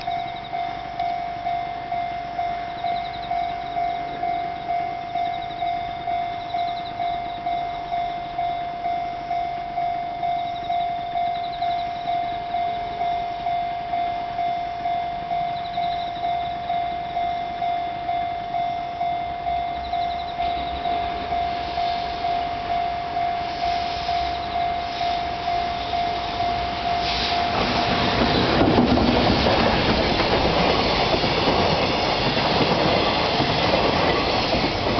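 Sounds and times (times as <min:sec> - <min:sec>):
level crossing bell ringing: 0:00.0 - 0:23.5
freight train passing: 0:00.0 - 0:34.9.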